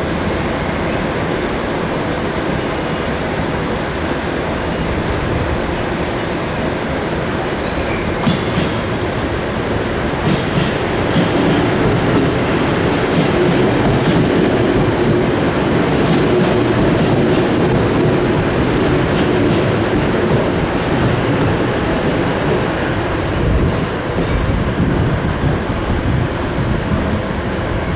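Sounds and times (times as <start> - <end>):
train wheels rumbling on rails: 0.0 - 27.9
high-pitched train squeal: 7.4 - 13.0, 19.0 - 25.2.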